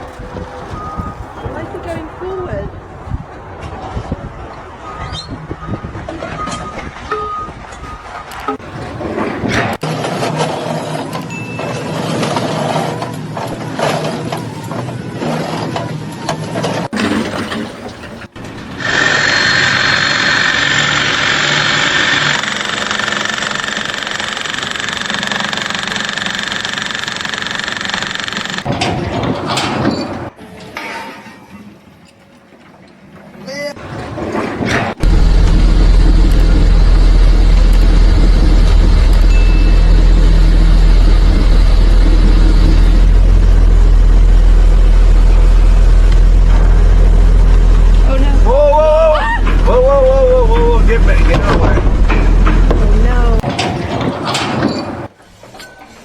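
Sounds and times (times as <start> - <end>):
machine engine running: 8.6 - 30.3, 33.8 - 55.1.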